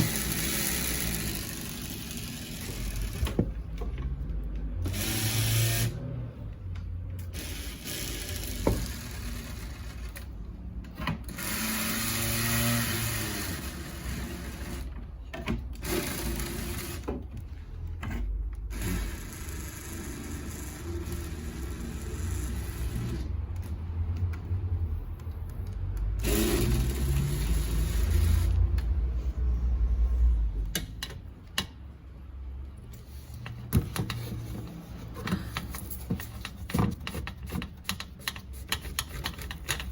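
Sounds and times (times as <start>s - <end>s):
small electric motor running: 0.0s - 3.2s, 4.9s - 6.0s, 7.4s - 10.2s, 11.3s - 14.9s.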